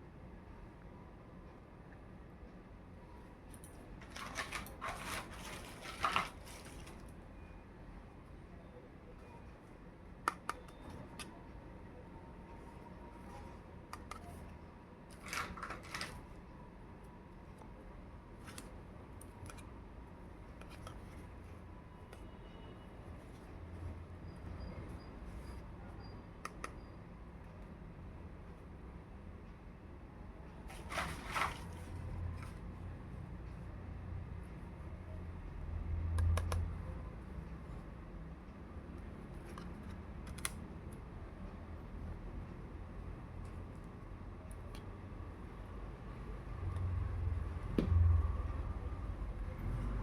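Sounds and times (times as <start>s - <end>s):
light sharp clicks and snips: 36.1s - 36.8s, 38.9s - 41.1s.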